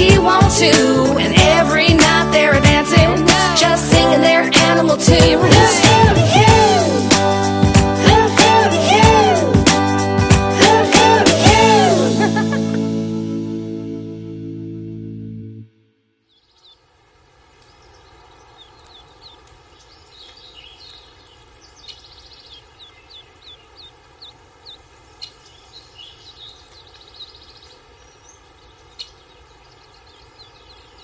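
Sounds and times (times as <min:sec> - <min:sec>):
birds chirping and trilling: 0:16.2 - 0:31.0
outdoor ambience: 0:16.2 - 0:31.0.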